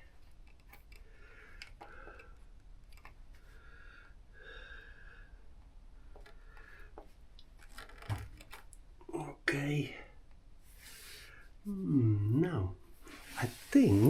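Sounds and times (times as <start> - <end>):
soft breathing: 0.0 - 7.3, 9.9 - 11.7.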